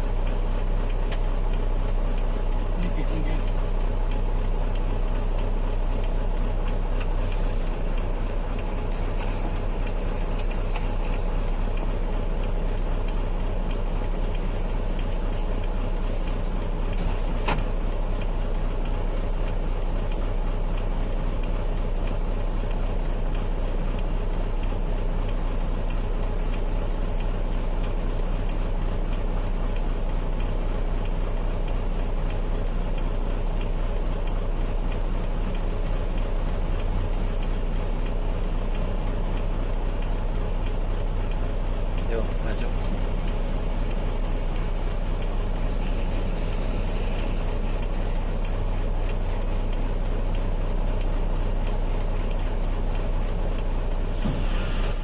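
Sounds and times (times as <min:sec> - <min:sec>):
regular ticking: 0:00.0 - 0:54.3
heavy truck engine hum: 0:00.0 - 0:55.0
sharp click: 0:42.0 - 0:44.7.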